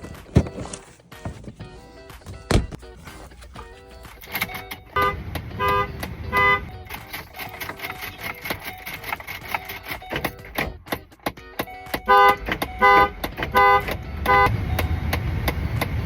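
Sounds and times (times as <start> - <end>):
car horn honking: 4.4 - 7.0, 12.0 - 15.1.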